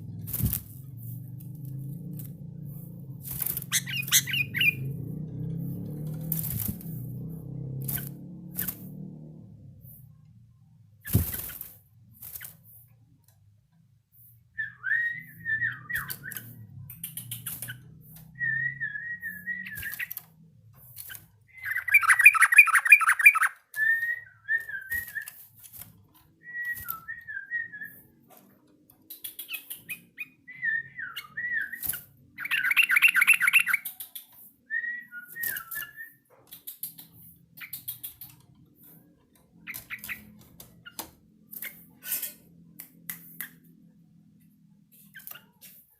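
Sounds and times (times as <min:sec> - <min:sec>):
bird rapid rattling bursts: 0:03.1 - 0:04.8, 0:06.1 - 0:07.0.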